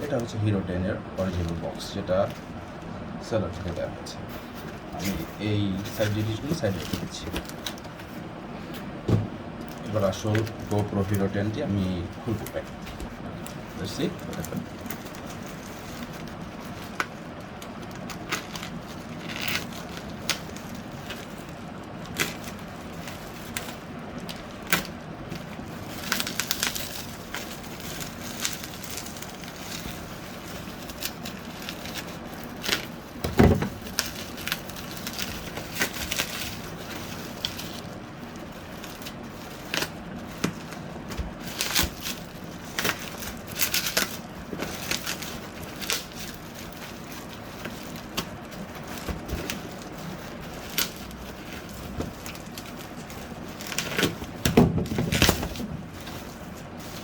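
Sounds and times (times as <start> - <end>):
plastic packaging crinkling: 0.0 - 9.0, 9.6 - 57.0
low thump: 9.1 - 9.4.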